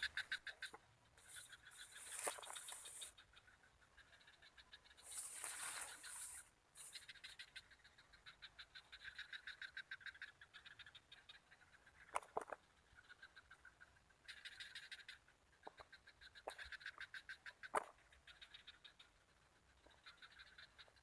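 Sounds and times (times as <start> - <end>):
frogs calling in pulsed trains: 0.0 - 21.0
high insect-like hiss: 5.0 - 7.0.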